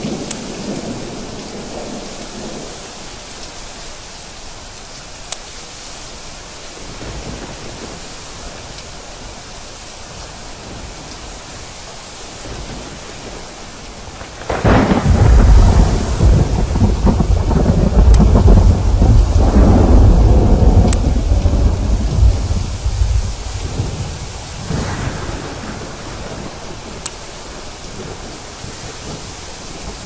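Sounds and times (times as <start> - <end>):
steady rain: 0.0 - 30.0
thunder rumbling: 12.4 - 30.0.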